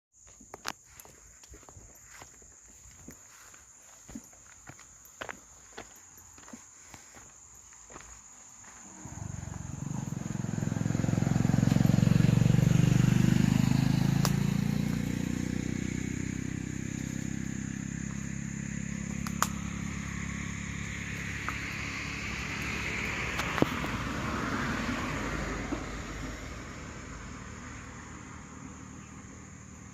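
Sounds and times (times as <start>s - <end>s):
vehicle engine passing: 8.6s - 29.9s
sharp clicks: 19.1s - 19.6s.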